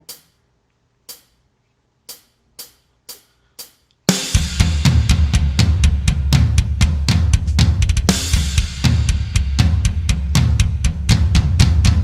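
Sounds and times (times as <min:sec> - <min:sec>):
full band with drum kit: 0:04.1 - 0:12.0.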